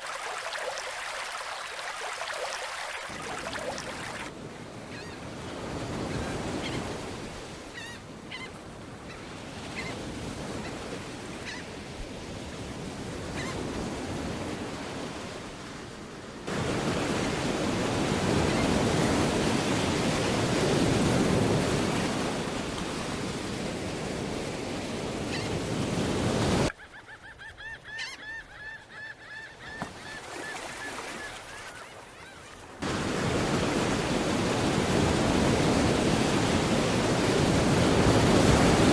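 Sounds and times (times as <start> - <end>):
sea surf washing on shore: 0.0 - 7.8, 9.4 - 26.7, 32.6 - 38.9
bird calls: 26.7 - 32.6.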